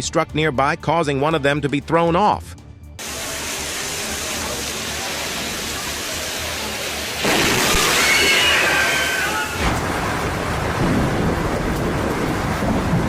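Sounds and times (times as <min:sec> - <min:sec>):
steady rain: 0:03.0 - 0:13.0
thunder: 0:07.2 - 0:13.0.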